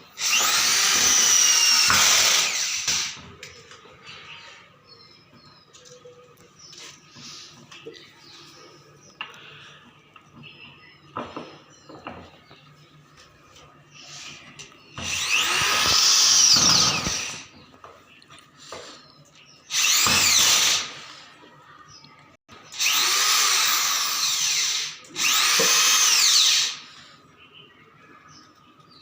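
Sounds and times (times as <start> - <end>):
electric drill boring: 0.0 - 3.3, 15.0 - 17.6, 19.7 - 21.2, 22.7 - 27.0.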